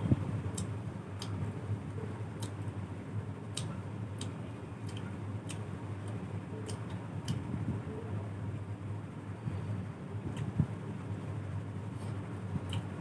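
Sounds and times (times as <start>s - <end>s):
steady low hum: 0.0s - 13.0s
person chewing with mouth clicks: 0.5s - 1.4s, 2.4s - 2.6s, 3.5s - 7.5s, 12.1s - 13.0s.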